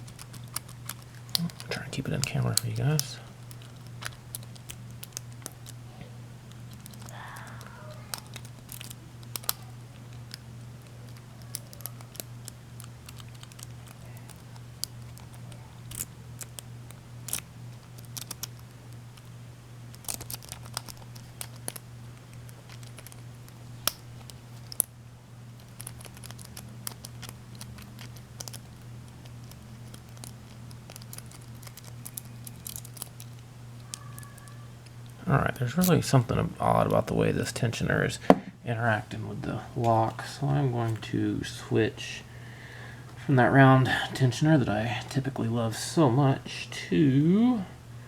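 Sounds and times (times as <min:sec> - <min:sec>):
lock pick clicking and scratching: 0:00.0 - 0:05.8, 0:06.5 - 0:19.3, 0:19.9 - 0:24.9, 0:25.6 - 0:35.0
steady low hum: 0:00.0 - 0:48.0.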